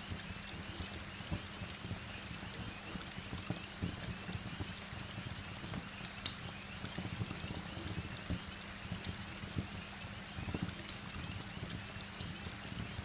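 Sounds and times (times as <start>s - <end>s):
steady rain: 0.0s - 13.0s
wood fire crackling and popping: 6.0s - 7.6s.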